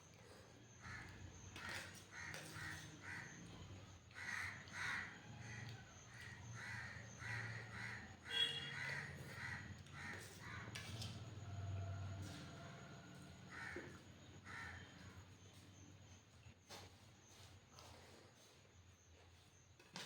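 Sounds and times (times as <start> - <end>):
crows cawing: 0.8 - 3.4, 4.1 - 10.7, 13.5 - 15.1.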